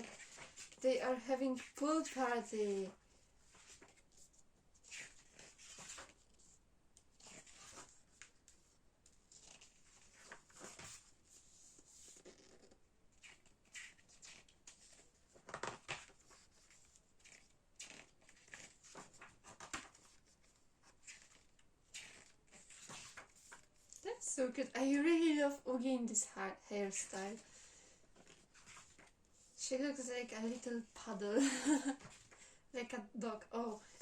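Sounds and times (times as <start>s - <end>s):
book pages turning: 0.0s - 0.8s, 1.6s - 24.0s, 27.0s - 29.5s
soft rustling and clicks: 0.0s - 24.2s, 26.9s - 31.1s.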